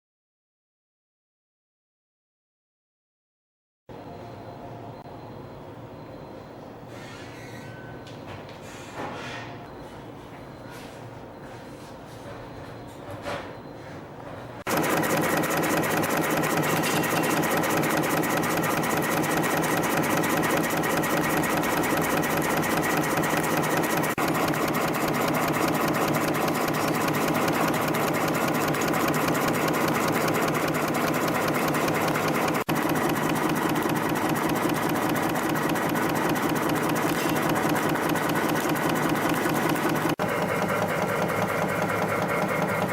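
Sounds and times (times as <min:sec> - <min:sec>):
spring coiling machine clatter: 0:14.7 - 0:42.9.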